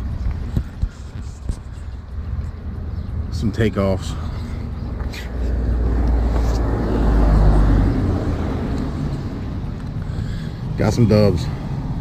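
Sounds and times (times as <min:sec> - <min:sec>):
vehicle passing by: 0:04.0 - 0:12.0.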